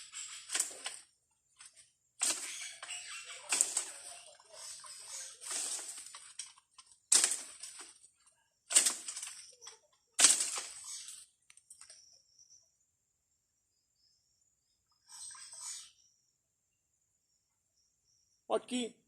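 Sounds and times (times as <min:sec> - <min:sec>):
leaves and branches rustling: 0:00.0 - 0:12.0.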